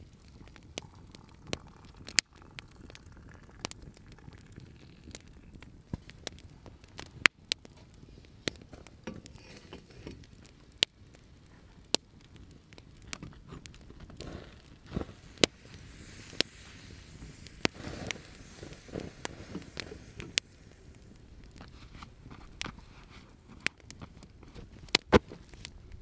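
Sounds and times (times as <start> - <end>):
campfire crackling and popping: 0.0 - 26.0
soft rustling: 13.0 - 26.0.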